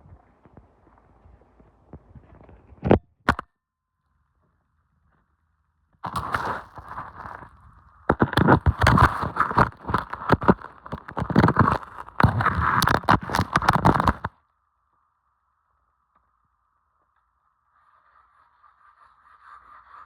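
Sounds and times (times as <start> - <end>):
scraping ice-crusted snow: 6.0 - 14.3.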